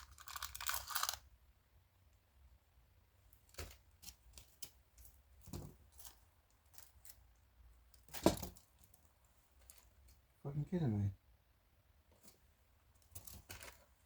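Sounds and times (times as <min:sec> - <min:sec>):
clunk and rustle: 0:03.4 - 0:07.2
parts and packaging clicking: 0:13.0 - 0:14.0.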